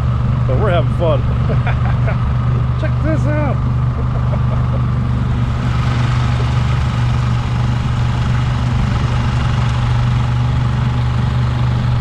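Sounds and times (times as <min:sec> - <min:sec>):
outboard motor running: 0:00.0 - 0:12.0.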